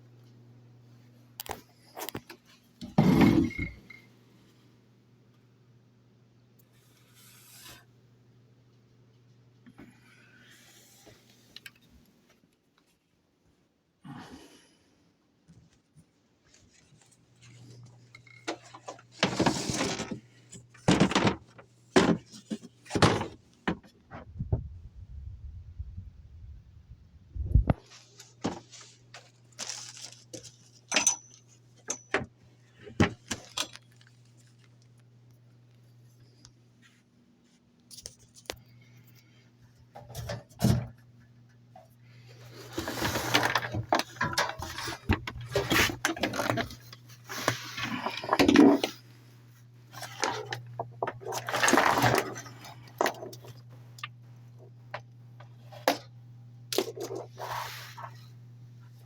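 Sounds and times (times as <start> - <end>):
rustling and clattering: 16.0 - 24.8, 27.7 - 34.8, 39.9 - 49.1.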